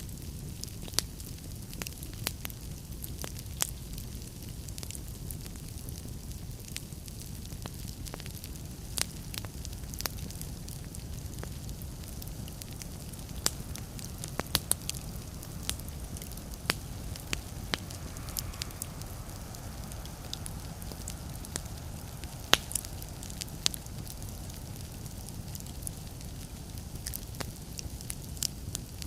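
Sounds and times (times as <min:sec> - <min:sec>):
wood fire crackling: 0:00.0 - 0:29.0.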